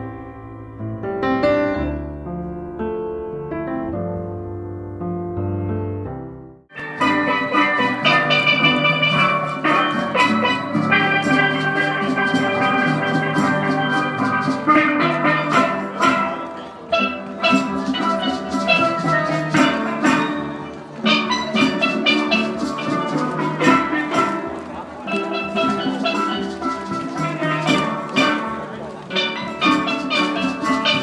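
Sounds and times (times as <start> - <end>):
instrumental music with drums: 6.7 - 31.0.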